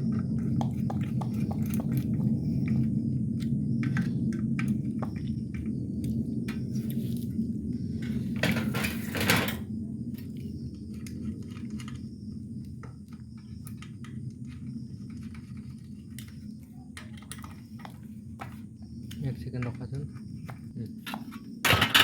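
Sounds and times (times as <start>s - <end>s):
steady low hum: 0.0s - 22.0s
fan parts clicking and clinking: 0.1s - 22.0s
rattle: 21.0s - 22.0s.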